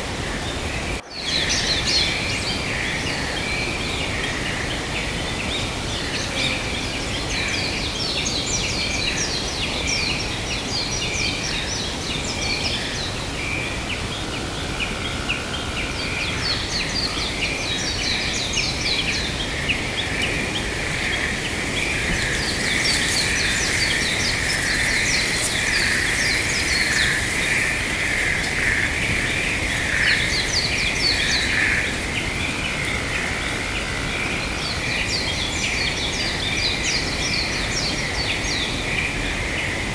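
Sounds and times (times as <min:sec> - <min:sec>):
constant hiss: 0:00.0 - 0:39.9
birds chirping: 0:15.3 - 0:39.8.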